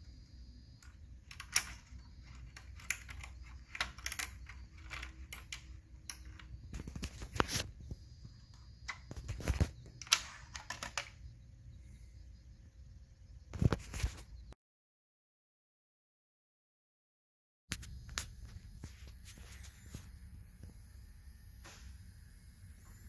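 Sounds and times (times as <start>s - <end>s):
low steady hum: 0.0s - 14.6s
hands handling small parts: 0.1s - 11.3s.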